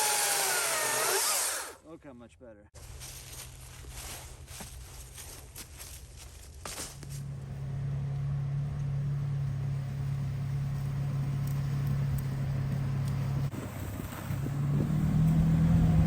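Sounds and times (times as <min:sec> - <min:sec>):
small engine running: 0:00.0 - 0:01.8.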